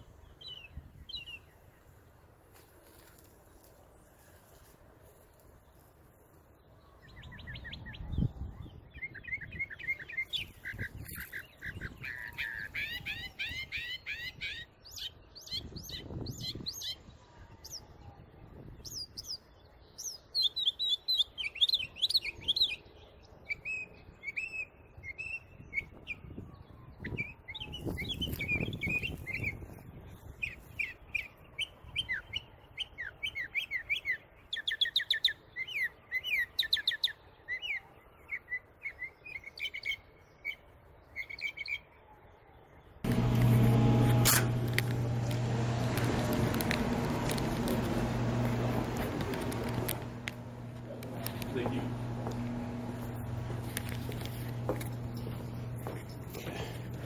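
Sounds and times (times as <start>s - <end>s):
small birds chirping: 2.8s - 29.7s, 42.9s - 57.0s
low rumbles: 43.1s - 57.0s.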